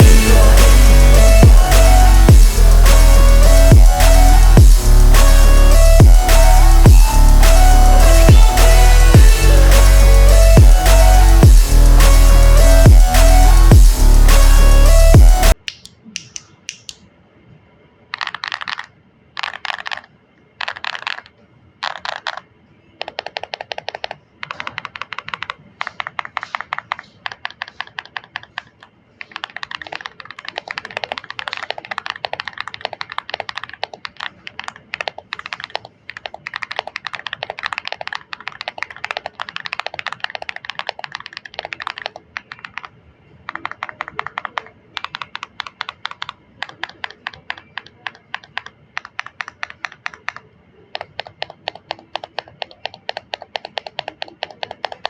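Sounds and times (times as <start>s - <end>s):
mechanical keyboard typing: 18.1s - 22.4s, 23.0s - 42.9s, 43.5s - 55.0s.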